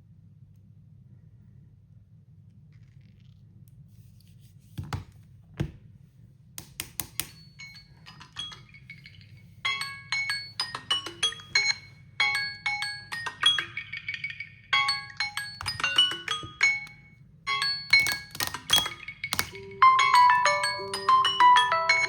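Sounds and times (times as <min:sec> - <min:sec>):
phone ringtone melody: 0:07.4 - 0:22.0
phone handling clicks: 0:17.9 - 0:19.6.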